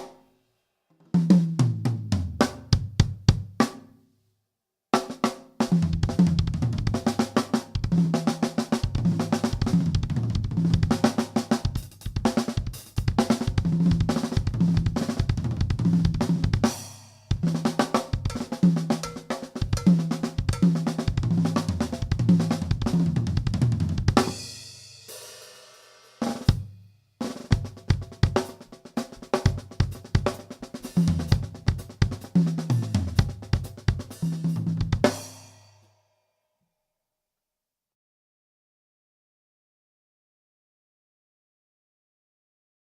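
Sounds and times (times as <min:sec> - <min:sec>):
drum kit playing: 0:01.2 - 0:03.8, 0:05.0 - 0:35.8.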